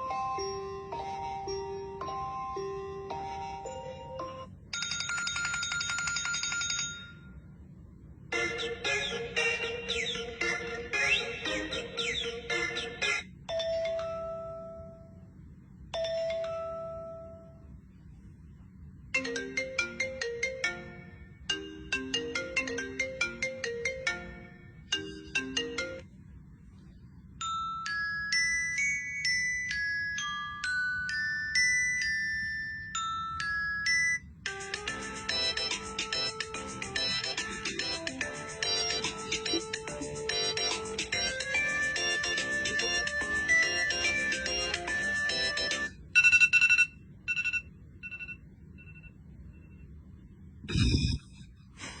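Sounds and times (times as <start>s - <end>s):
bell-like chime melody: 0.0s - 7.4s, 27.4s - 34.4s
plucked ringtone melody: 0.0s - 7.4s, 13.4s - 15.2s, 15.9s - 17.6s, 19.2s - 26.1s, 27.4s - 48.3s
ringtone tune with bass line: 0.0s - 7.4s, 8.3s - 15.3s, 15.9s - 17.7s, 19.2s - 26.1s, 27.4s - 49.8s.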